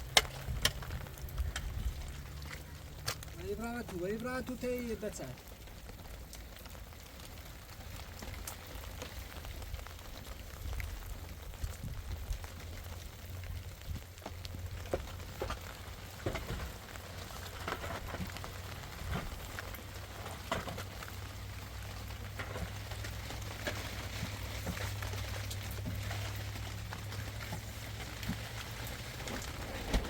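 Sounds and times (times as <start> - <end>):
steady low rumble: 0.0 - 4.3
rain falling: 0.0 - 30.0.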